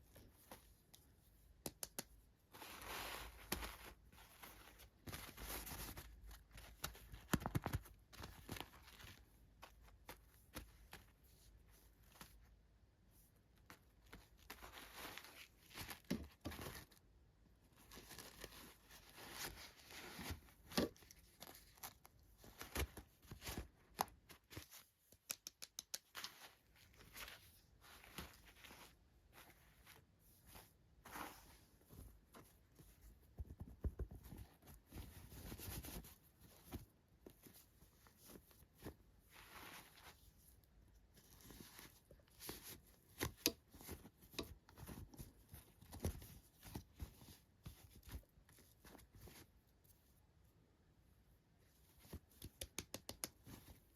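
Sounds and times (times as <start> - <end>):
small clicks and taps: 0.9 - 2.2, 24.0 - 26.4, 52.1 - 53.7
light taps and clicks: 52.2 - 53.6.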